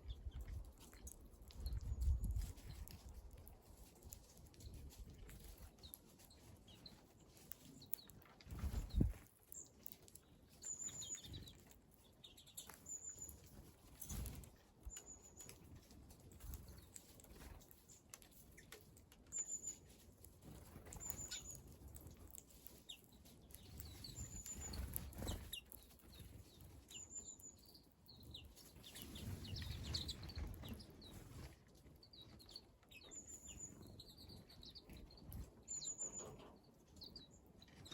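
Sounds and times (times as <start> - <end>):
birds chirping softly: 0.0 - 37.9
small birds calling: 4.6 - 37.9.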